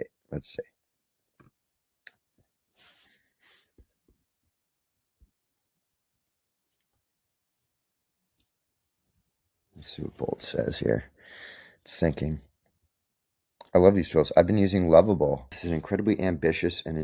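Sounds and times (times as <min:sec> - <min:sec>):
soft rustles: 0:02.8 - 0:04.0.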